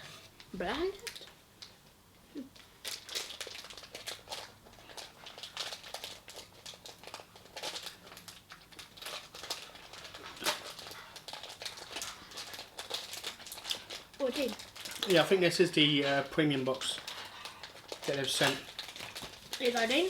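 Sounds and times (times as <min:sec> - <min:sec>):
plastic bag crinkling: 0:00.0 - 0:01.9, 0:02.5 - 0:20.0.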